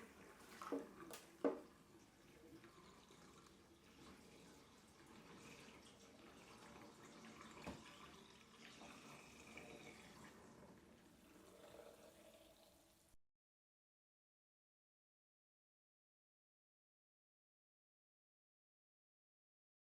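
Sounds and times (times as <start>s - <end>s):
water dripping in a sink: 0.0s - 10.3s.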